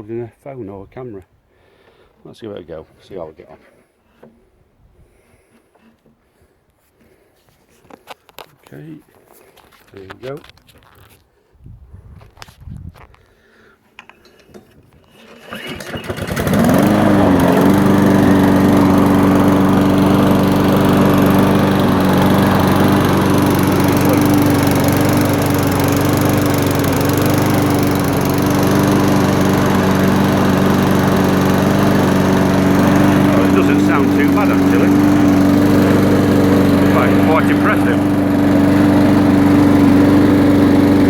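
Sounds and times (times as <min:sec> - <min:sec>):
lawnmower engine running: 0:15.0 - 0:41.0.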